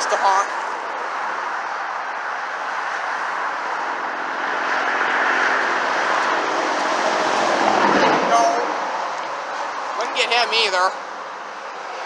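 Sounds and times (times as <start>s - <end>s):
truck engine and tyre noise: 0.0s - 12.0s.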